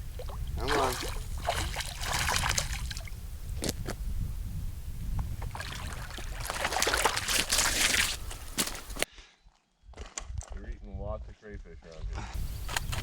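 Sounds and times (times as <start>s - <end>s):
water splashing and sloshing: 0.0s - 3.2s, 5.2s - 9.1s.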